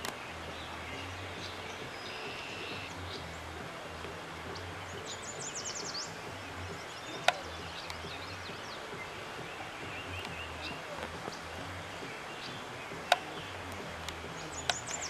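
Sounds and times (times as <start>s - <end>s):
songbirds singing and chirping: 0.0s - 15.0s
stream rushing: 0.0s - 15.0s.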